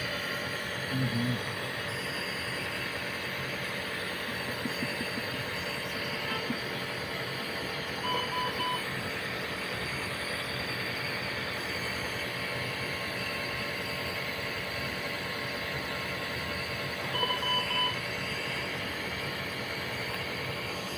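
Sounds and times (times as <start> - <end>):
medical monitor alarm beeps: 7.8 - 8.9, 17.1 - 18.2.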